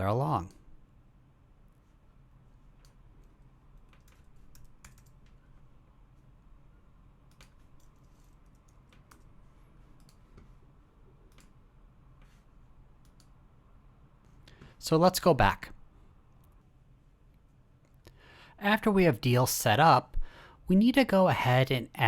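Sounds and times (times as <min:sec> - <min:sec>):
low steady hum: 0:00.0 - 0:22.0
keyboard and mouse clicks: 0:02.8 - 0:05.4, 0:07.2 - 0:09.3, 0:09.9 - 0:10.5, 0:11.3 - 0:11.6, 0:13.0 - 0:13.4.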